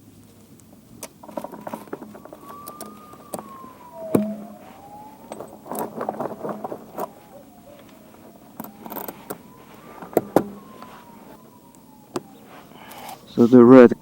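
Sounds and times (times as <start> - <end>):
faint tone rising and falling: 1.2 - 14.0
snow chain links clinking: 5.2 - 9.4.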